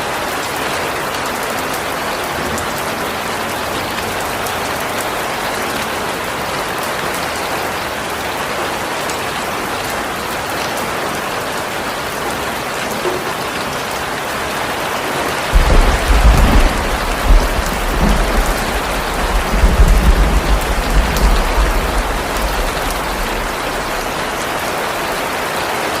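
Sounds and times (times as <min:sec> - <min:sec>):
heavy rain falling: 0:00.0 - 0:26.0
loud low rumble: 0:15.5 - 0:25.0.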